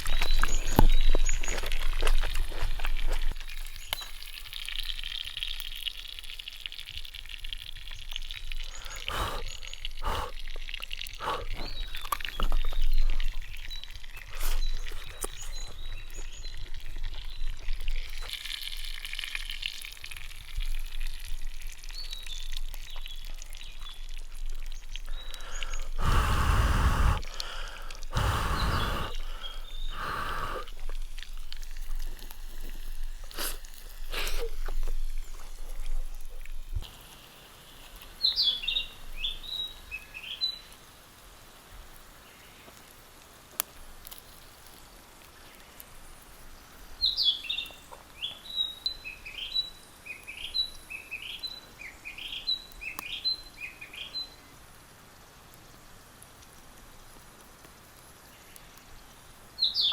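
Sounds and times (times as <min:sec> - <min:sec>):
small birds singing: 0:00.0 - 0:04.4, 0:07.8 - 0:18.3, 0:21.8 - 0:31.6, 0:38.1 - 0:40.8, 0:46.5 - 0:54.6, 0:58.3 - 0:59.9.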